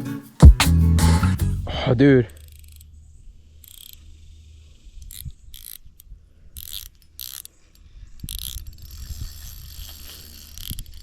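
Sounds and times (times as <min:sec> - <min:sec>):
fishing reel clicking: 0:02.4 - 0:03.0, 0:03.6 - 0:11.0.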